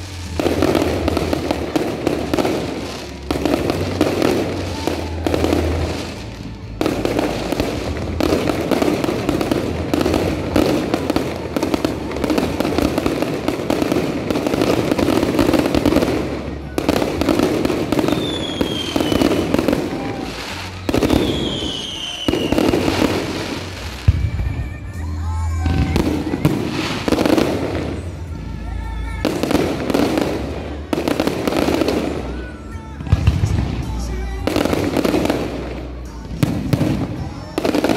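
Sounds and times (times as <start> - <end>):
fireworks crackling and banging: 0.0 - 37.9
falling firework whistles: 17.9 - 24.8.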